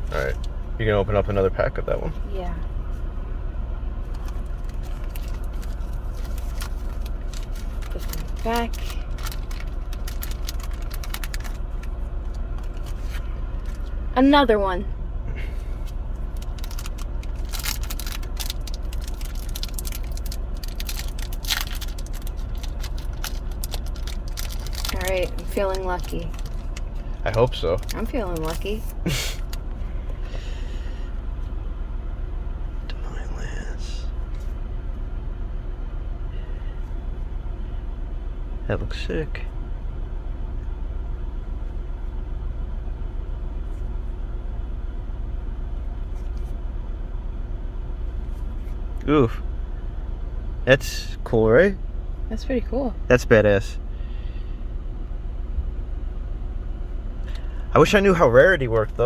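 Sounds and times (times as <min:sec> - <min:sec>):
car interior engine rumble: 0:00.0 - 0:59.0
steady low hum: 0:00.0 - 0:59.0
foil wrapper crinkling and tearing: 0:04.2 - 0:13.9, 0:16.2 - 0:29.7.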